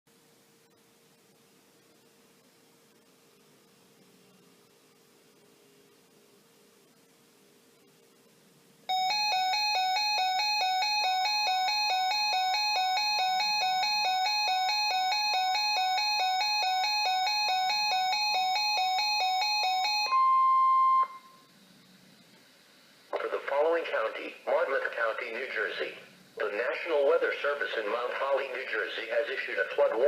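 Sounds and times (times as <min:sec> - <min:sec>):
electronic chime notes: 0:08.9 - 0:21.5
loud steady warning tone: 0:08.9 - 0:22.0.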